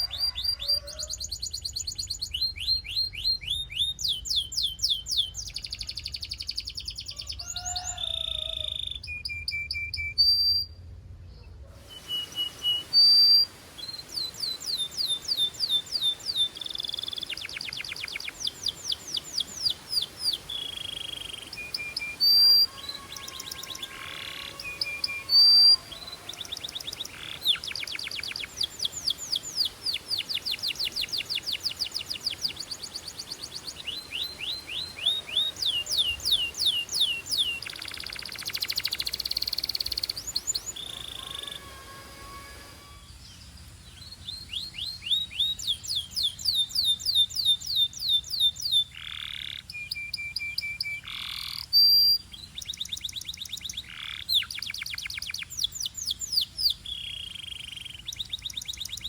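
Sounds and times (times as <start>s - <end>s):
buzzy rolling birdsong: 10.7s - 59.0s
canary singing trills: 11.8s - 59.0s.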